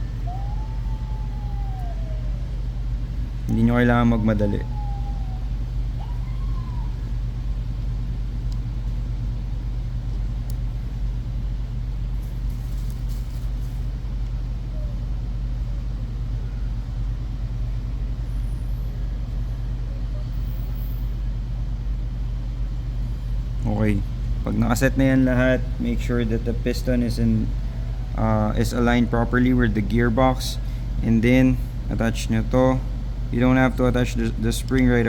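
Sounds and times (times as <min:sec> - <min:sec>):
low mechanical hum: 0:00.0 - 0:35.0
faint light clicks: 0:08.4 - 0:09.0, 0:10.1 - 0:10.7.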